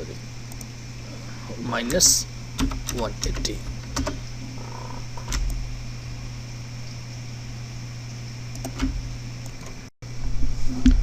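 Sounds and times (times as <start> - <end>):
fan humming: 0.0 - 11.0
sharp clicks: 0.5 - 0.7, 2.6 - 4.2, 8.5 - 9.8.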